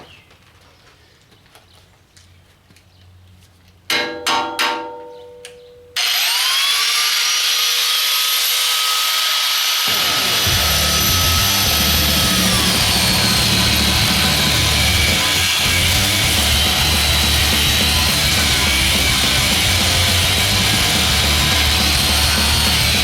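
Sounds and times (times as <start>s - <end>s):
ringing metallic clanks: 3.9s - 6.0s
heavy bass and drum beat: 10.0s - 23.0s.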